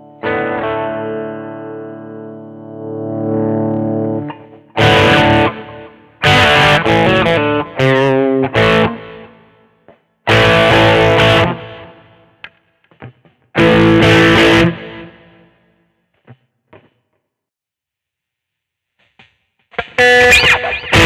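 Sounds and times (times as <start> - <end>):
distorted electric guitar chords: 0.0 - 9.4, 10.3 - 12.2, 12.9 - 15.4, 19.2 - 21.0.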